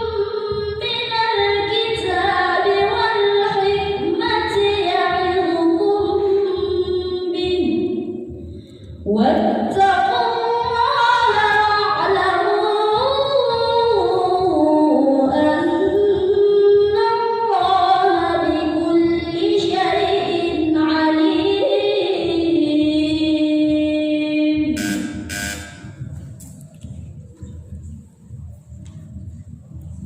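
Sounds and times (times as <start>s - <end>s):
woman chanting melodically: 9.0s - 25.5s.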